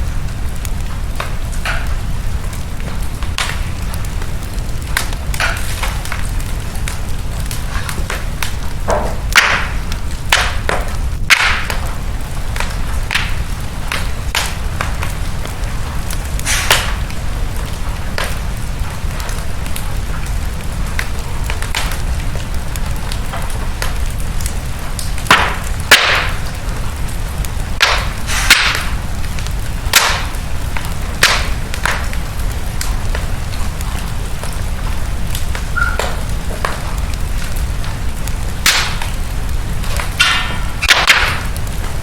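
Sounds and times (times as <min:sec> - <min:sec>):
fire popping and snapping: 0:00.0 - 0:42.0
wood fire crackling: 0:00.0 - 0:42.0.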